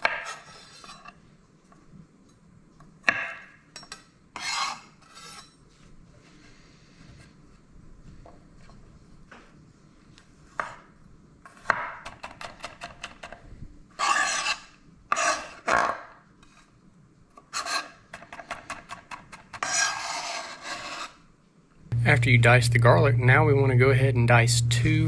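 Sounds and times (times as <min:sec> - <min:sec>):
knife blade scraping wood: 0:14.0 - 0:14.6.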